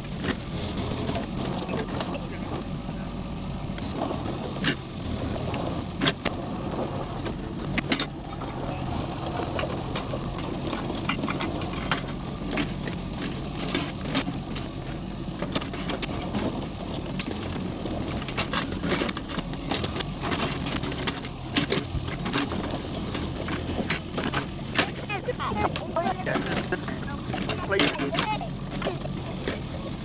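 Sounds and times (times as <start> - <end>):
excavator diesel engine running: 0.0 - 30.0.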